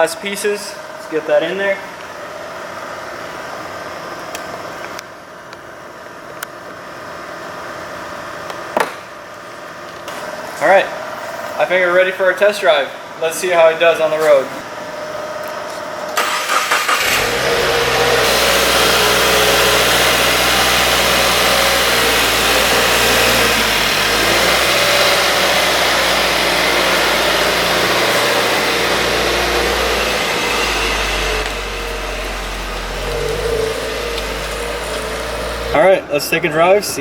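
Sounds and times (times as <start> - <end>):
car engine running: 14.8 - 37.0.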